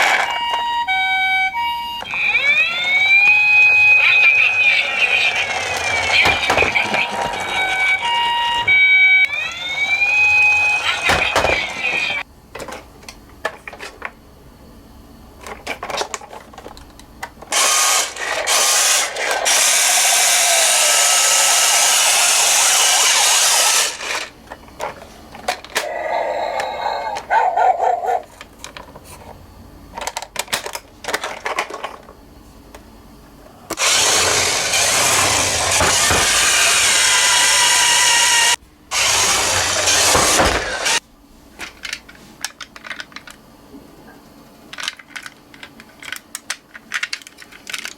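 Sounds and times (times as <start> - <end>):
toys clicking and knocking: 2.0 - 14.1, 15.4 - 27.3, 30.0 - 32.1, 33.7 - 41.0, 44.7 - 47.9
toy cars whirring and rattling: 2.1 - 8.2, 17.5 - 27.2, 33.8 - 41.0.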